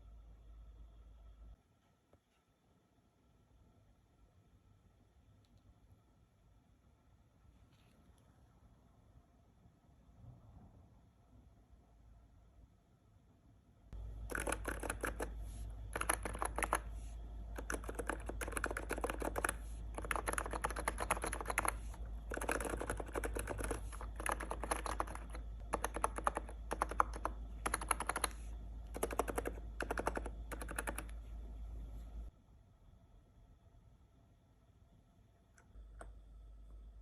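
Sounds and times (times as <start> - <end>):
keyboard typing: 14.0 - 31.3.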